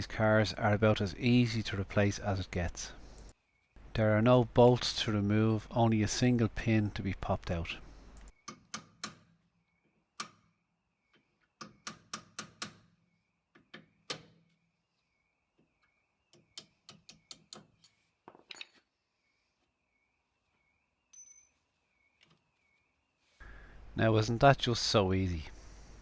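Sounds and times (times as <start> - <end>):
sharp metallic taps and clicks: 11.6 - 12.9.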